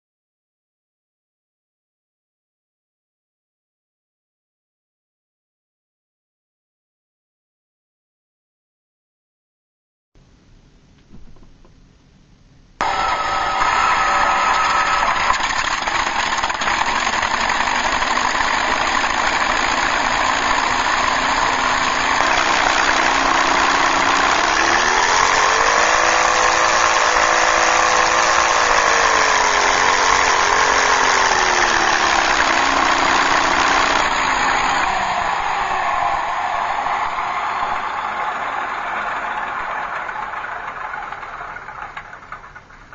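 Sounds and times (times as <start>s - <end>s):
synthesized airplane engine: 12.8s - 41.9s.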